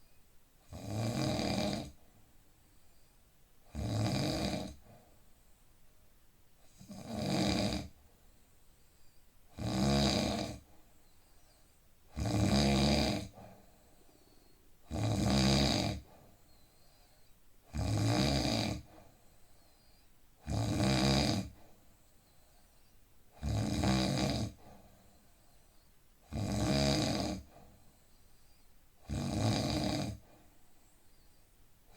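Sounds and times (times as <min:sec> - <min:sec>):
man snoring: 0:00.7 - 0:02.0, 0:03.7 - 0:04.8, 0:06.8 - 0:07.9, 0:09.6 - 0:10.6, 0:12.1 - 0:13.4, 0:14.9 - 0:16.0, 0:17.7 - 0:18.9, 0:20.4 - 0:21.6, 0:23.4 - 0:24.6, 0:26.3 - 0:27.5, 0:29.0 - 0:30.2.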